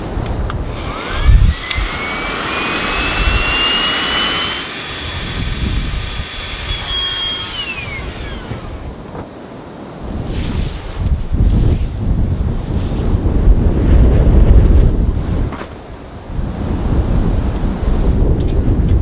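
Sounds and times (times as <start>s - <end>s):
wind rumble on microphone: 0.0s - 19.0s
machine whine rising in pitch: 0.8s - 8.8s.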